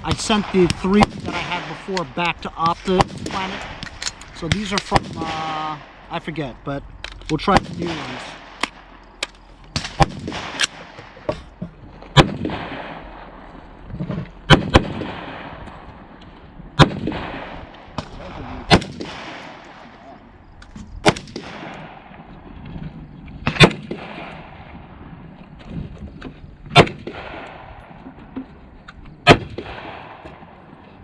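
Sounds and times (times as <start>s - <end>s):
rifle shots with rolling echo: 0.0s - 25.4s, 26.7s - 28.6s, 29.2s - 31.0s
faint distant gunshots: 7.4s - 11.4s, 12.1s - 13.5s, 14.4s - 16.2s, 16.8s - 20.2s, 21.0s - 22.4s, 23.4s - 25.2s, 26.7s - 28.0s, 29.2s - 30.7s.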